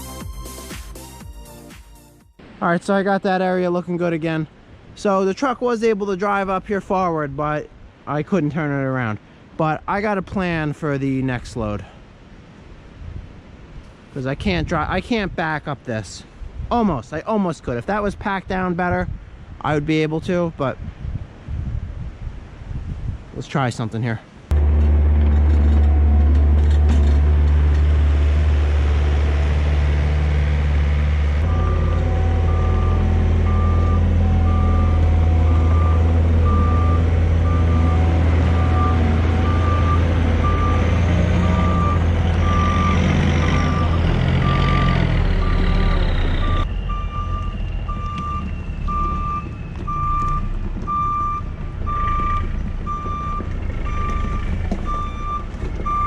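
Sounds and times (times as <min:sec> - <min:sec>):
truck engine running: 0:24.5 - 0:56.0
reversing alarm beeping: 0:31.4 - 0:56.0.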